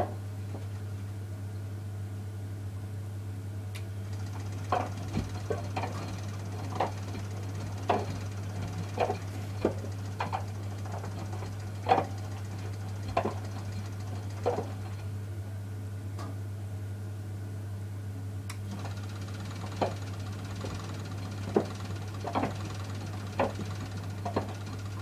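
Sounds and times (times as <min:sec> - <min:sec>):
washing machine motor hum: 0:03.9 - 0:15.3, 0:18.5 - 0:25.0.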